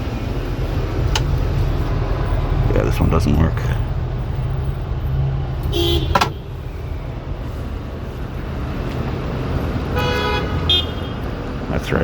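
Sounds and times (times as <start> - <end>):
street traffic rumble: 0.0 - 12.0.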